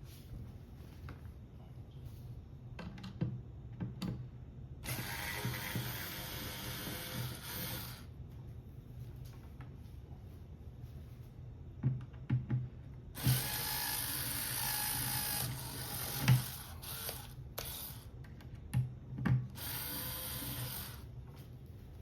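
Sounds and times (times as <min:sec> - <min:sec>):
power drill motor whine: 0:04.8 - 0:08.1, 0:13.2 - 0:18.1, 0:19.6 - 0:21.1.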